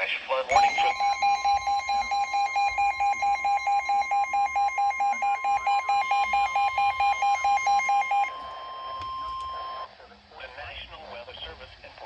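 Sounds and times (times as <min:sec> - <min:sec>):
rapid electronic beeping: 0:00.5 - 0:08.3
steady alarm tone: 0:00.5 - 0:08.4.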